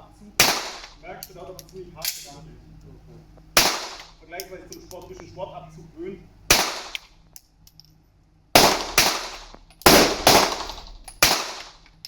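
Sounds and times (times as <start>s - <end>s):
gunshots with echo: 0.4s - 1.0s, 3.6s - 4.2s, 6.5s - 7.0s, 8.6s - 11.8s.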